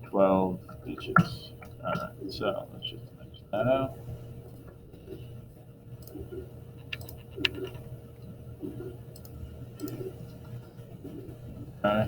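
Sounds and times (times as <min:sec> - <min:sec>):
low hum: 0:00.0 - 0:12.0
computer mouse clicking: 0:06.0 - 0:10.8.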